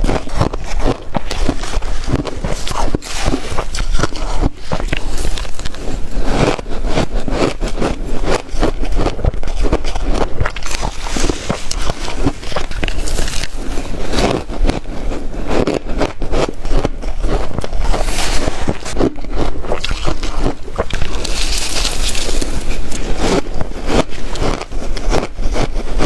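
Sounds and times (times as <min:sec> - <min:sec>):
person chewing ice: 0:00.0 - 0:26.0.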